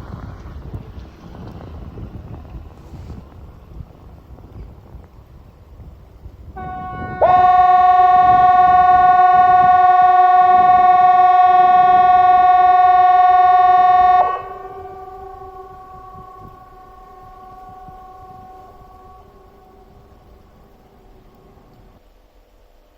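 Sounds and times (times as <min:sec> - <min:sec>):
outdoor warning siren two-note tone: 0:06.6 - 0:22.0.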